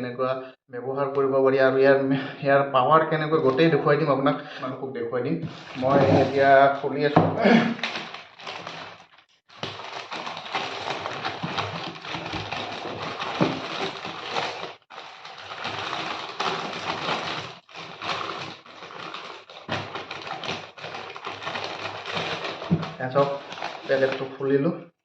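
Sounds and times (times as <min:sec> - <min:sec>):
packaging rustling and ripping: 0:07.7 - 0:24.3.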